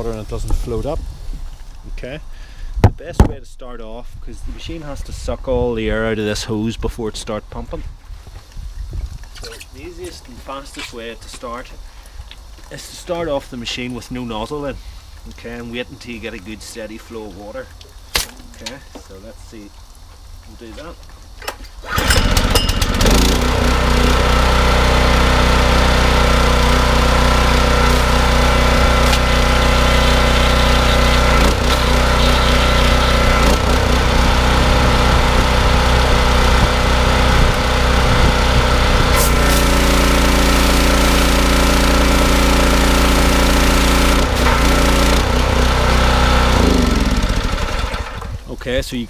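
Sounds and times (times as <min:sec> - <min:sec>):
pressure washer engine running: 0:21.9 - 0:48.4.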